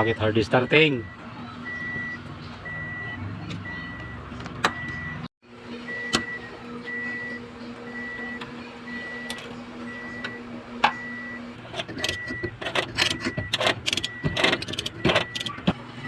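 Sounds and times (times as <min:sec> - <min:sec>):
high electronic beeps: 0:00.0 - 0:11.4
steady low hum: 0:04.8 - 0:16.0.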